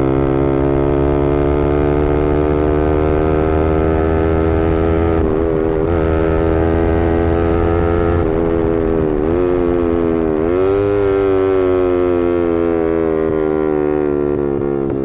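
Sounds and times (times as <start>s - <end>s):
motorcycle engine at high revs: 0.0s - 15.0s.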